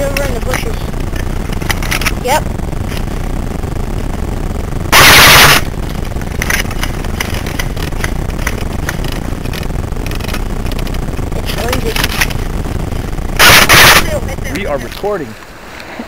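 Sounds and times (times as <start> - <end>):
camera handling and wind noise: 0.1 - 2.2, 5.8 - 11.0
airsoft guns firing: 4.9 - 5.7, 13.4 - 14.2.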